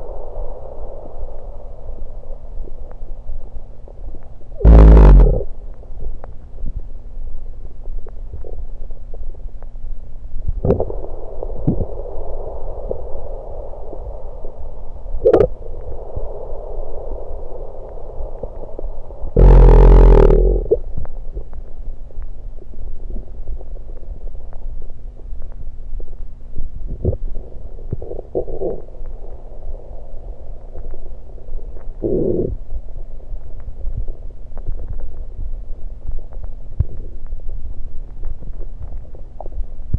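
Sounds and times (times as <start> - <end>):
stomach gurgling and rumbling: 2.0 - 39.9
sharp clicks: 4.7 - 5.4.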